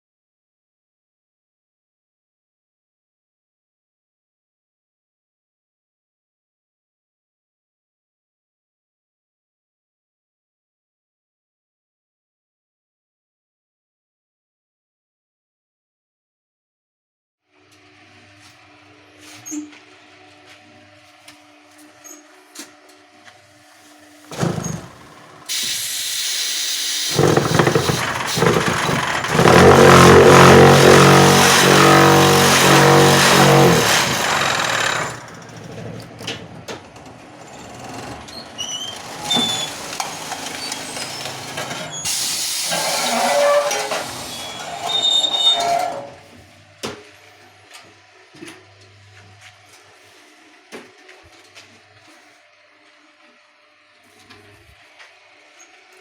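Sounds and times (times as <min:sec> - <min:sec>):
compressed air hissing: 0:25.5 - 0:29.2
vibrating table buzzing: 0:26.9 - 0:36.2.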